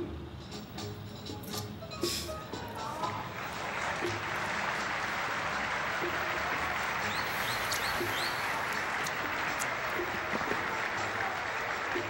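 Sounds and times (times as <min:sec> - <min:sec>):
applause: 0:03.0 - 0:12.0.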